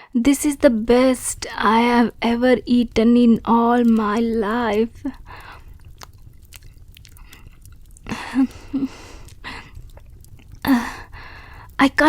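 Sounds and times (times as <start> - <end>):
chewing and mouth sounds: 4.7 - 11.8
breath: 5.3 - 5.8, 7.2 - 9.8, 10.6 - 11.8.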